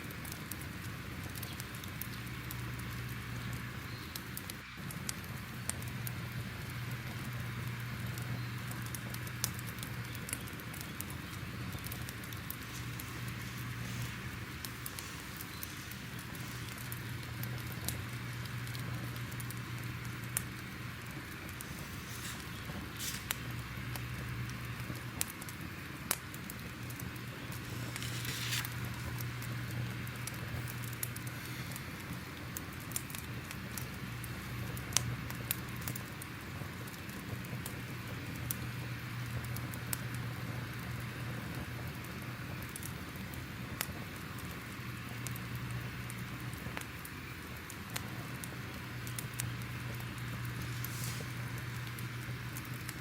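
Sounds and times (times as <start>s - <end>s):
steady hiss: 0.0s - 36.0s, 48.8s - 53.0s
fire crackling and popping: 0.0s - 53.0s
low steady hum: 0.0s - 53.0s.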